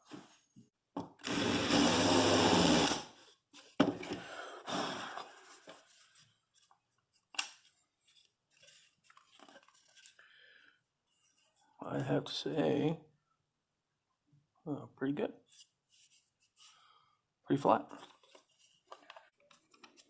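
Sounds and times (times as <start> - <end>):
power drill running: 1.2 - 3.1.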